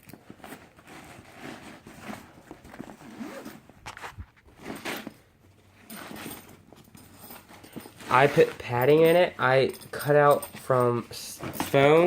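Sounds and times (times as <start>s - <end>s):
bag rustling: 0.0s - 12.0s
zipper on fabric bag: 0.8s - 5.1s.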